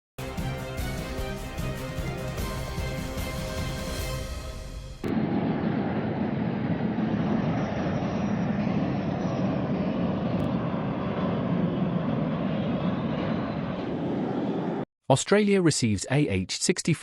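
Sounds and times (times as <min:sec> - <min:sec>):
aircraft engine rumble: 0:04.4 - 0:14.9.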